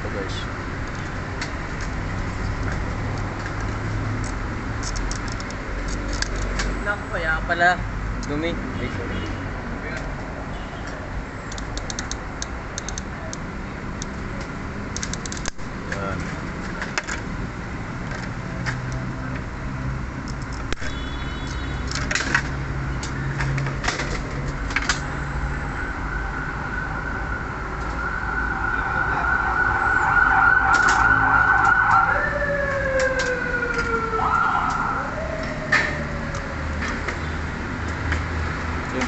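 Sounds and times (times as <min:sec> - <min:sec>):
wavering siren-like tone: 0:25.6 - 0:36.7.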